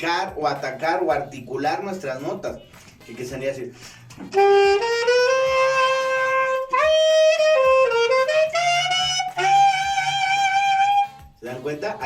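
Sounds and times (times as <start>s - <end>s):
growling saxophone notes: 4.3s - 11.3s.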